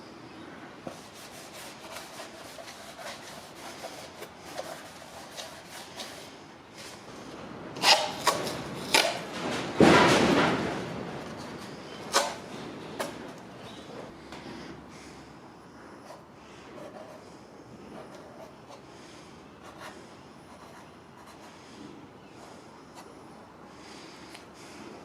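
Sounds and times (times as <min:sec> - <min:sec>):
scraping rub: 0:00.9 - 0:07.0
sharp knocks: 0:08.3 - 0:13.2.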